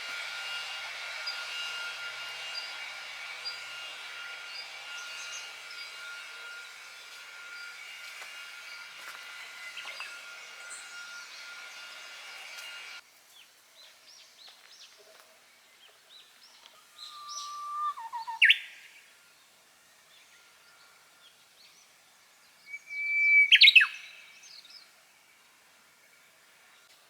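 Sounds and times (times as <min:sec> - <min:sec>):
faint bird chirps: 0:14.2 - 0:19.4, 0:22.7 - 0:24.9
songbird singing whistled song: 0:15.6 - 0:19.1, 0:22.6 - 0:25.0.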